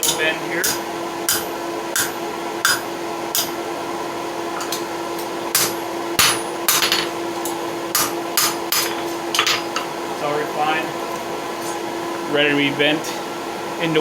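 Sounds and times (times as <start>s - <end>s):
hammer striking steel on anvil: 0.0s - 3.6s, 4.6s - 9.8s
steady hum: 0.0s - 14.0s.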